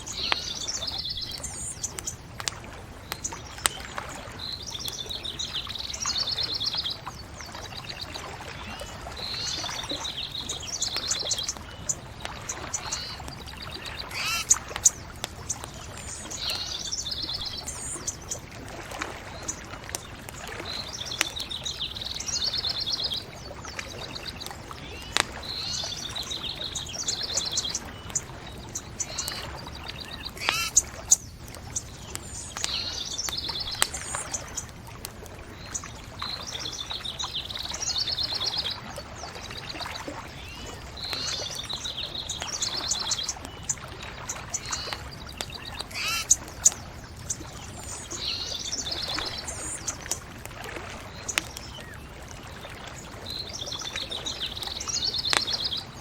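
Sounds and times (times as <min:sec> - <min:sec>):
songbird trilling: 0:00.0 - 0:02.3, 0:02.9 - 0:18.5, 0:19.3 - 0:34.7, 0:39.6 - 0:50.2
bonfire crackling and popping: 0:00.0 - 0:08.2, 0:08.9 - 0:37.4, 0:40.3 - 0:56.0.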